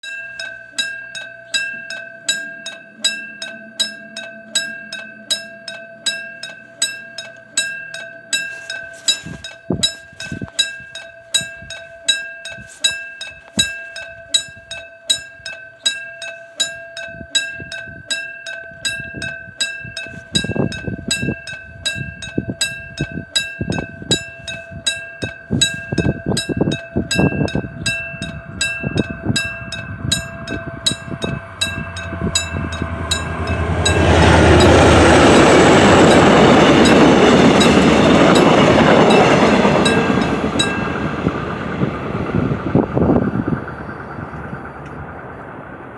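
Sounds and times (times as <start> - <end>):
crossing warning bell dinging: 0.0 - 45.9
passenger train rumbling: 20.1 - 45.9.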